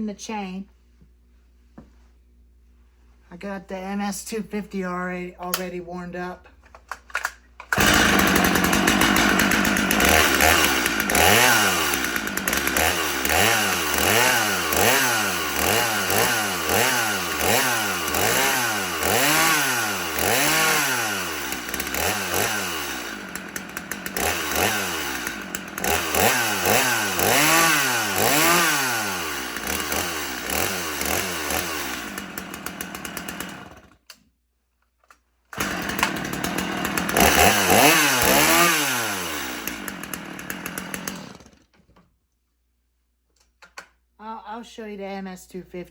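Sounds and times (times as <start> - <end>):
chainsaw revving: 7.7 - 34.0, 35.5 - 41.6.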